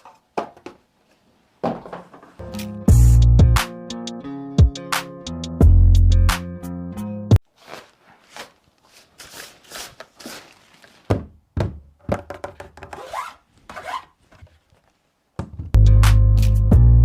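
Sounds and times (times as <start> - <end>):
rubbing and scraping: 7.4 - 11.1.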